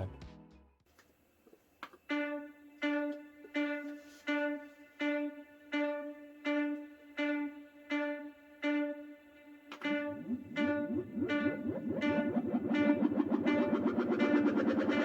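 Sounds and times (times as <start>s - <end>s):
plucked string-like synth note: 9.7s - 15.0s.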